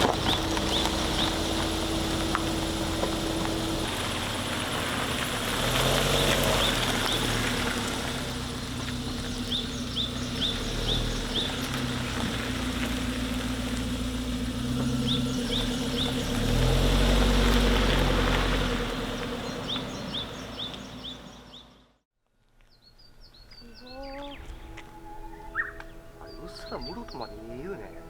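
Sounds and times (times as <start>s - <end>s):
bird chirping: 0.0s - 3.5s, 9.0s - 12.3s, 14.7s - 17.4s, 19.1s - 21.9s, 22.6s - 28.0s
car engine running: 0.0s - 22.0s.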